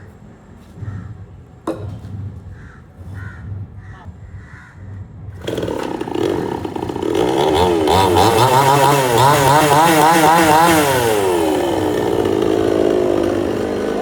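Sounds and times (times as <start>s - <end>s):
chainsaw engine revving: 5.4s - 14.0s.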